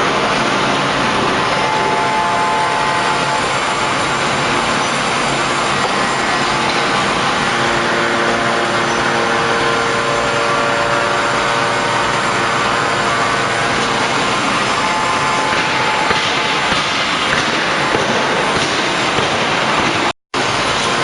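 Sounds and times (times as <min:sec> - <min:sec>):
forging press mechanical drone: 0:00.0 - 0:21.0
noisy hiss: 0:00.0 - 0:21.0.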